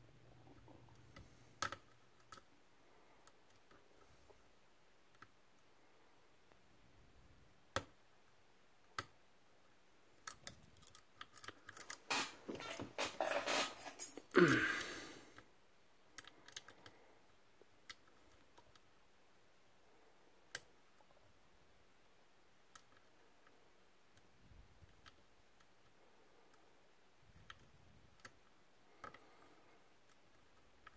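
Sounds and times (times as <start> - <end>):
lock picks clicking and scraping: 10.2 - 14.4.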